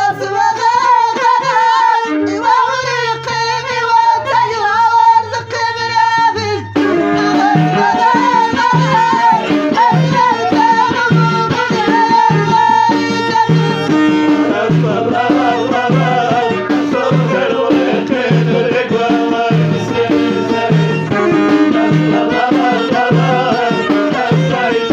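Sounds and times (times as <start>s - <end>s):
hand drums beating: 0.0s - 5.0s, 5.6s - 24.9s
bending melodic line: 1.8s - 24.9s.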